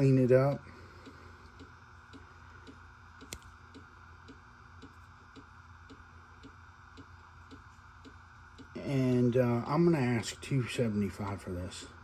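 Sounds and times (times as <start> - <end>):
low steady hum: 0.0 - 12.0
faint clock-like ticking: 0.5 - 9.6.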